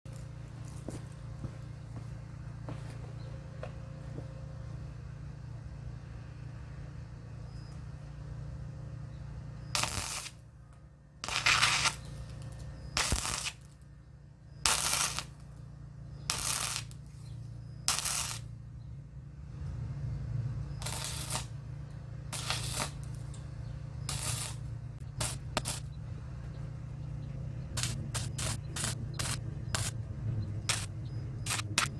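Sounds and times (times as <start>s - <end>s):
arc welding crackling: 0.1s - 1.3s, 9.7s - 10.5s, 11.2s - 13.9s, 14.5s - 18.6s, 20.7s - 21.6s, 22.3s - 26.9s, 27.8s - 31.9s
low hum: 0.1s - 31.9s.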